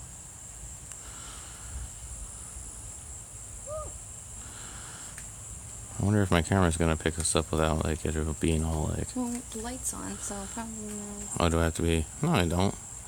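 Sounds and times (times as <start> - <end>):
crickets chirping: 0.0 - 13.0
rising and falling call: 3.6 - 4.0.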